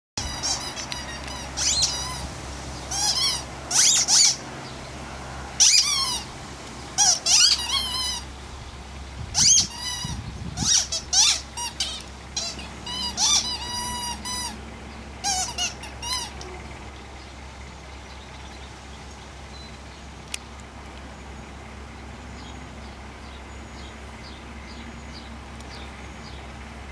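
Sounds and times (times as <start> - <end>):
squeaky toy squeaking: 0.2 - 2.3, 2.9 - 4.4, 5.6 - 6.3, 7.0 - 8.3, 9.3 - 14.6, 15.2 - 16.6.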